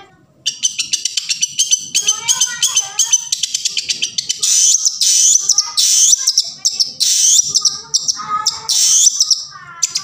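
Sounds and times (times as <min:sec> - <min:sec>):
bird singing varied song: 0:00.4 - 0:10.0.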